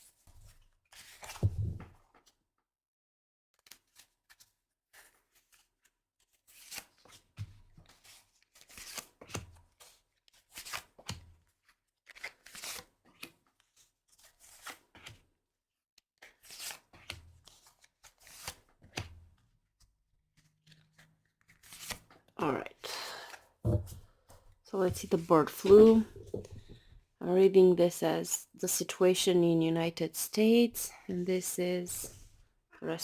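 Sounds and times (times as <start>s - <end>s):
cards being shuffled: 7.9s - 11.2s, 12.0s - 15.2s, 16.2s - 19.1s, 20.7s - 22.3s.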